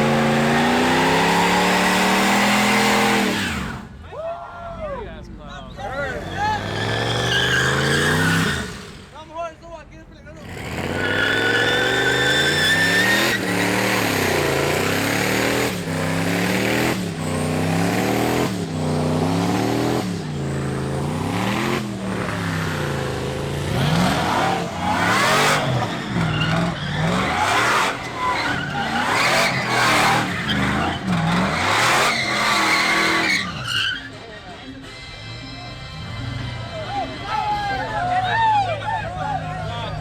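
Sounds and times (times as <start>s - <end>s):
truck engine revving: 0.0s - 4.0s, 6.0s - 9.2s, 10.4s - 34.8s, 35.7s - 37.2s
tyres squealing: 5.6s - 9.2s, 10.4s - 34.8s.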